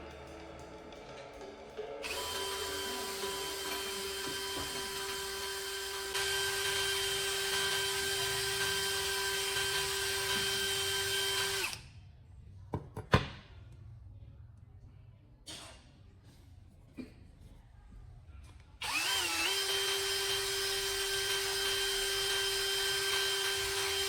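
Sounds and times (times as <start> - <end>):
electric power tool motor spinning: 2.0 - 11.8, 18.8 - 24.0.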